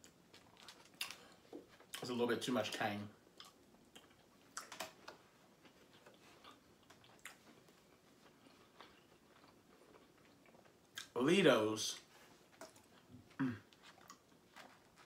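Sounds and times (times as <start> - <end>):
chewing and mouth clicks: 3.4 - 11.2, 12.5 - 15.0.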